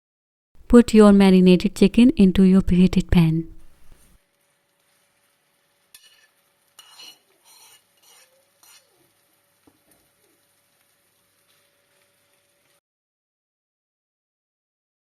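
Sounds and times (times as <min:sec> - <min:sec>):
chicken sizzling in a pan: 0:04.1 - 0:12.8.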